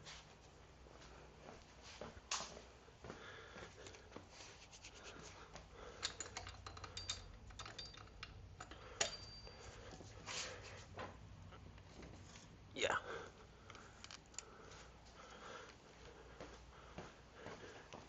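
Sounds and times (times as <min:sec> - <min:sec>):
hand tools clicking on metal: 0:05.8 - 0:10.0.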